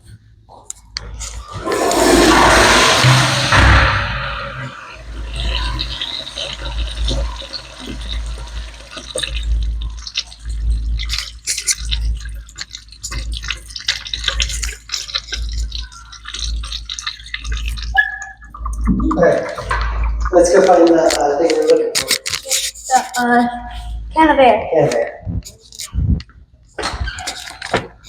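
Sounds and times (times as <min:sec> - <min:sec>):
water trickling and dripping: 0:01.2 - 0:20.9
low rumble: 0:01.4 - 0:08.7
small water splashes: 0:05.0 - 0:19.7.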